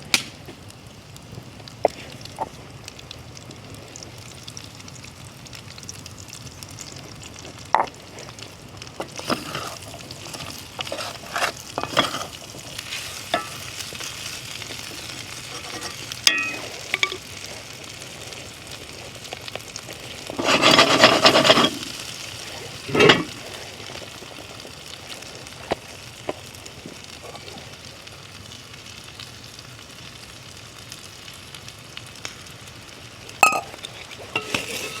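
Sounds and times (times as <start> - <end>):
food sizzling in a pan: 0.0 - 35.0
utensil scraping a pan: 9.0 - 17.2, 20.2 - 23.6, 33.4 - 35.0.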